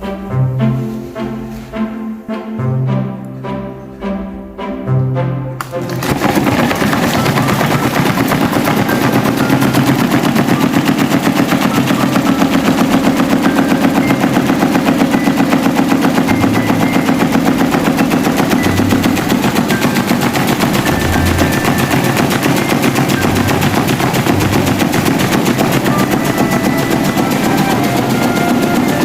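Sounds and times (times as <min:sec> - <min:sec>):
fan blade clatter: 0:05.6 - 0:29.0
fan motor hum: 0:05.7 - 0:29.0.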